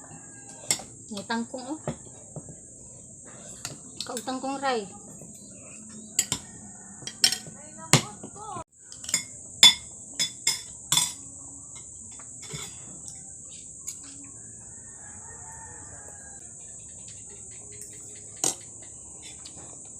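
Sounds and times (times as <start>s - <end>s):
rooster crowing: 0.0s - 2.5s, 5.6s - 8.6s, 12.9s - 18.3s
high drone of insects: 0.0s - 19.9s
utensils clinking on dishes: 0.4s - 1.0s, 5.2s - 8.0s, 8.9s - 13.2s.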